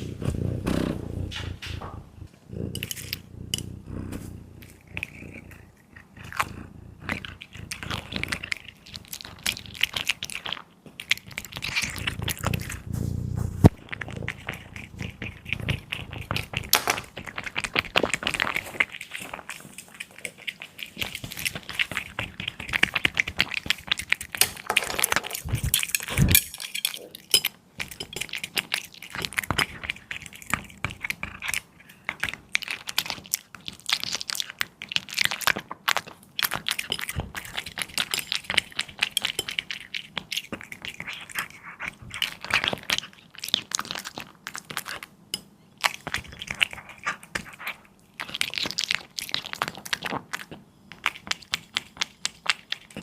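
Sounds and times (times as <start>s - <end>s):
cat chewing raw meat: 0.0s - 1.3s, 2.0s - 26.4s, 27.1s - 53.0s.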